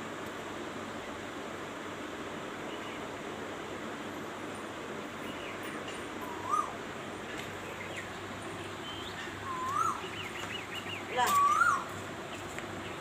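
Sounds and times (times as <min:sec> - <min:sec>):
steady background hiss: 0:00.0 - 0:13.0
small birds chirping: 0:02.5 - 0:03.3, 0:04.0 - 0:13.0
koel whistling call: 0:06.3 - 0:06.8, 0:09.4 - 0:10.1, 0:10.9 - 0:11.9.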